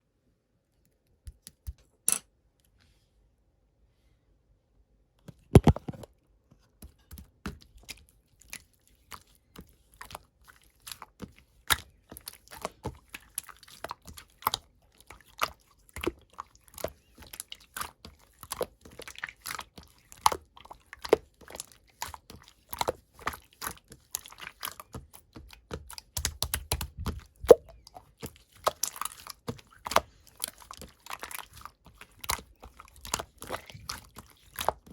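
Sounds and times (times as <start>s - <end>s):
slime squished by hand: 7.1s - 34.9s.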